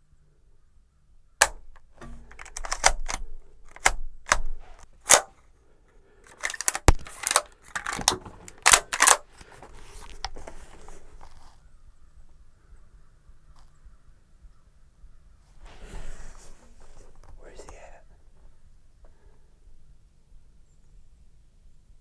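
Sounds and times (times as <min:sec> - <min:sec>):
gun handling clicks and knocks: 0:01.4 - 0:05.4, 0:06.3 - 0:11.4.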